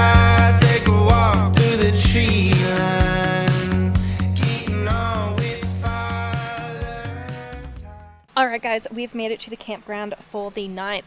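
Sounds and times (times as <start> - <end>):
song with bass line and beat: 0.0 - 8.2.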